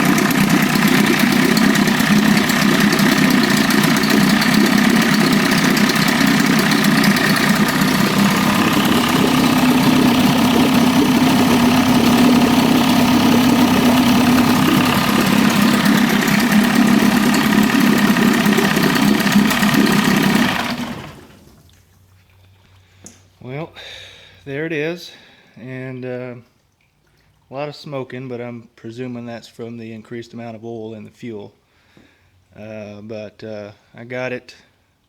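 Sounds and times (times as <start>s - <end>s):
outboard engine running at low speed: 0.0s - 21.8s.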